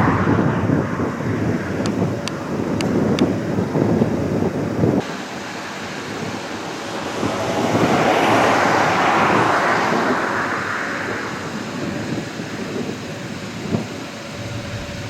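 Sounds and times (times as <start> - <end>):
wind: 0.0 - 15.0
road traffic: 4.9 - 12.6, 14.1 - 15.0
broad whoosh: 14.3 - 15.0.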